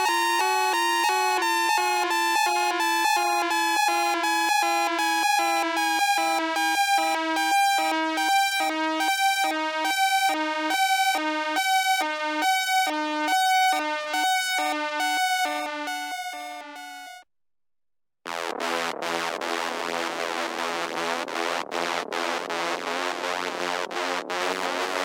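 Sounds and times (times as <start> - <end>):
electronic alarm siren: 0.0 - 17.2.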